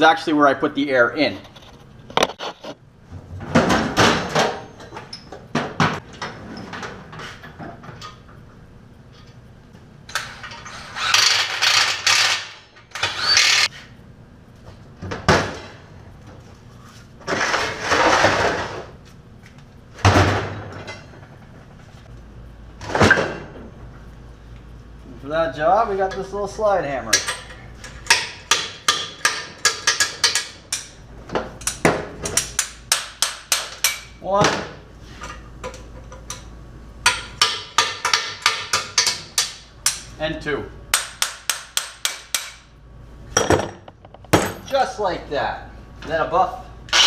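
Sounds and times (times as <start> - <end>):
workshop tool bursts: 10.1 - 13.7.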